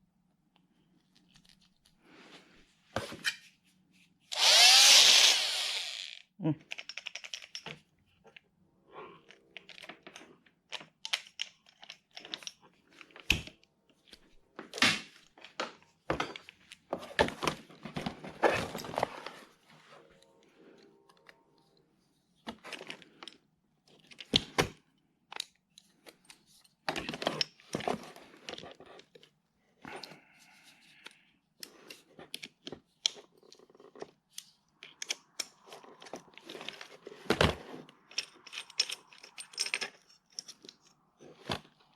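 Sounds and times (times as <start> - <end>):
small hard parts knocking: 38.0 - 40.9.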